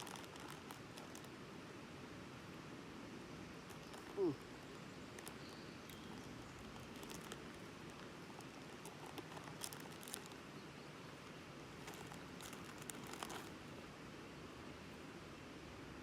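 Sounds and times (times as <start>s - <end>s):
plastic packaging crinkling: 0.0s - 1.3s, 3.7s - 10.5s, 11.8s - 13.6s
faint hiss: 0.0s - 16.0s.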